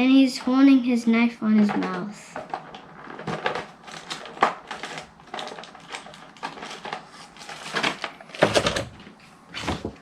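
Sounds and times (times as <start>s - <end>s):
plastic toy clicking and rustling: 1.6s - 9.0s.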